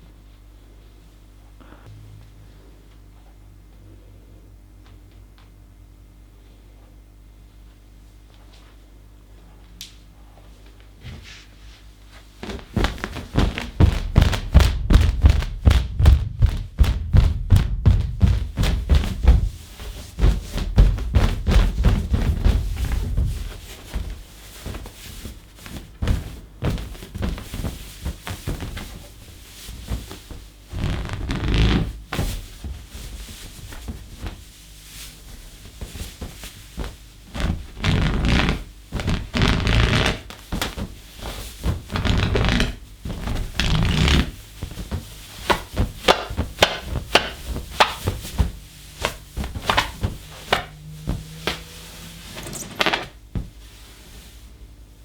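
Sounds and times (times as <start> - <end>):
balloon thudding: 12.4 - 24.9, 35.4 - 53.6
rubber rubbing on balloon: 12.4 - 25.4, 27.1 - 53.2.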